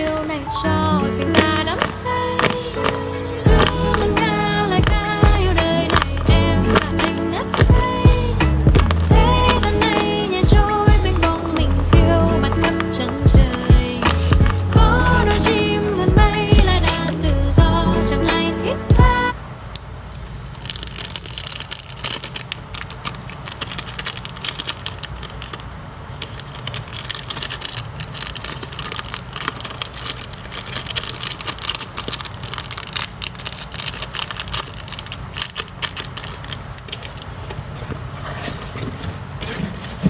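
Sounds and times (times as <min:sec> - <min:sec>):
plastic packaging crinkling: 0:00.0 - 0:19.3, 0:19.9 - 0:40.0
low steady rumble: 0:03.4 - 0:19.2.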